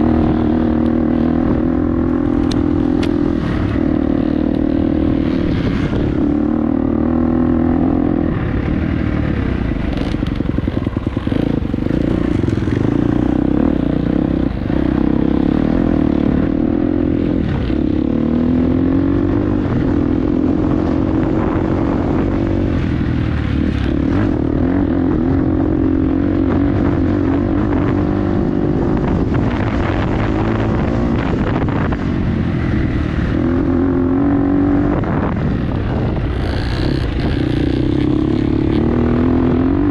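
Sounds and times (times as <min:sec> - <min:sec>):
dirt bike engine revving: 0:09.4 - 0:31.9, 0:32.6 - 0:39.9.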